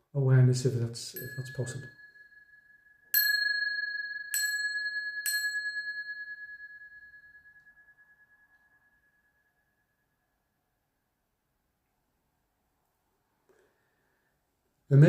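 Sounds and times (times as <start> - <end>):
meditation bells ringing: 1.1 - 10.1.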